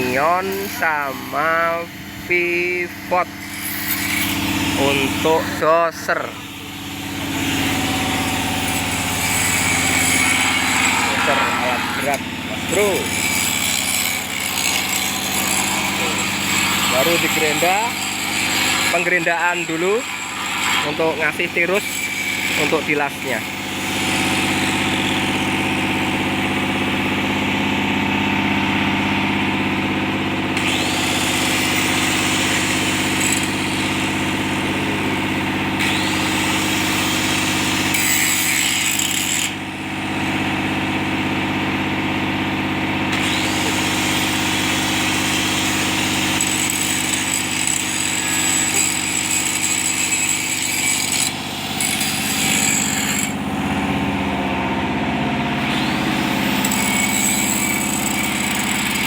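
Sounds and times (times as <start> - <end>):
angle grinder grinding steel: 0.0 - 41.7, 43.0 - 59.0
engine running: 23.7 - 37.8, 39.6 - 46.4, 53.3 - 59.0.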